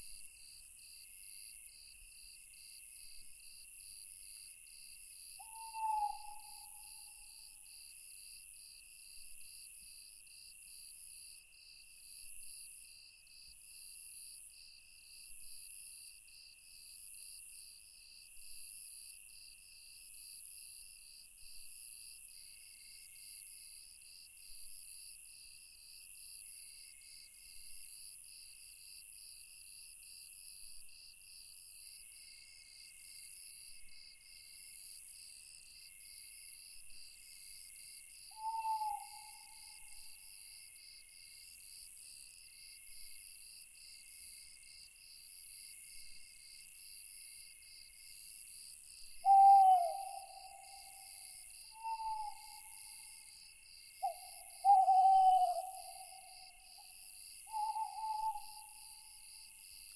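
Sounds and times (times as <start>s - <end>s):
crickets chirring: 5.4s - 7.1s, 38.3s - 40.2s, 49.0s - 59.6s
owl hooting: 5.4s - 7.1s, 38.4s - 40.0s, 49.2s - 53.0s, 54.0s - 56.9s, 57.5s - 59.1s.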